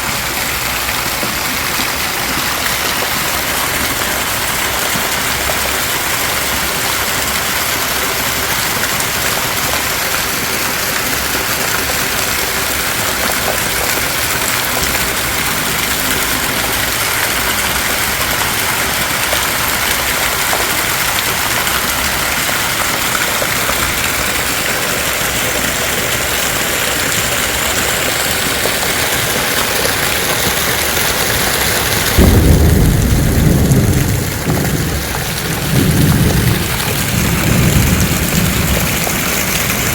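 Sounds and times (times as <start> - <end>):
heavy rain: 0.0 - 39.9
thunder rumble: 30.3 - 39.9.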